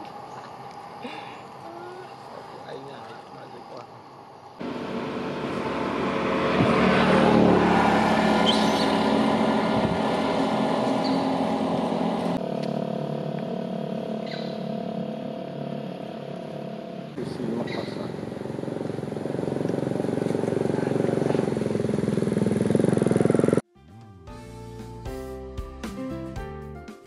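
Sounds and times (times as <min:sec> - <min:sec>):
vehicle engine running: 0:04.6 - 0:23.6.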